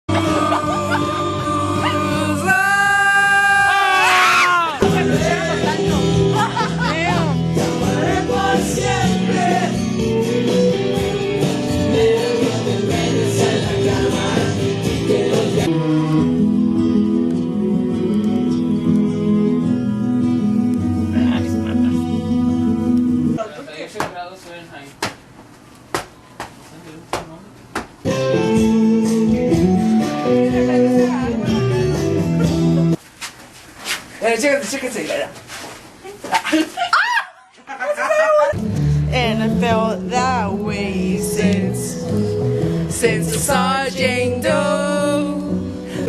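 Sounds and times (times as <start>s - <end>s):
song with singing and band: 0.1s - 3.6s, 4.7s - 22.2s, 28.1s - 33.0s, 38.6s - 46.0s
guitar music: 4.8s - 23.4s, 28.0s - 33.0s, 38.6s - 46.0s.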